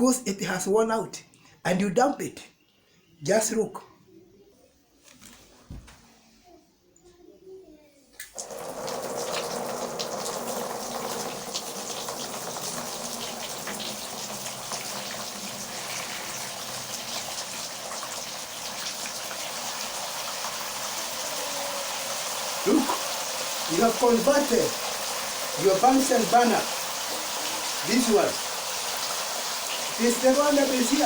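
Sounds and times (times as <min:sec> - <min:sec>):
water spraying from shower head: 0:08.3 - 0:31.0.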